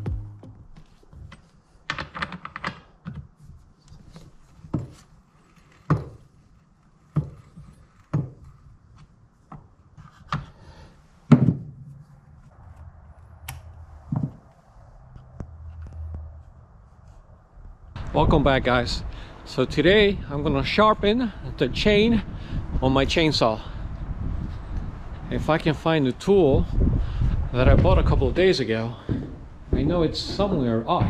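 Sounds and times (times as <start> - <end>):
sharp knocks and clicks: 7.1 - 10.5.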